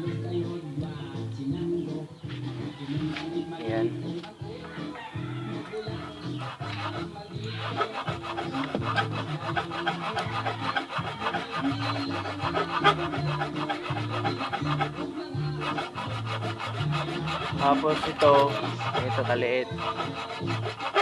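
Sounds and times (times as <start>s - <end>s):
background music with bass notes: 0.0s - 21.0s
rasping scrape: 5.7s - 21.0s.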